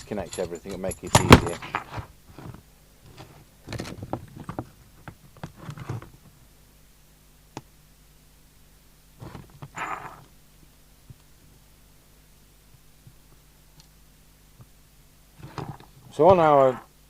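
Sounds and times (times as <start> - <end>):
rustling: 0.0 - 6.3
faint steady hum: 0.0 - 17.0.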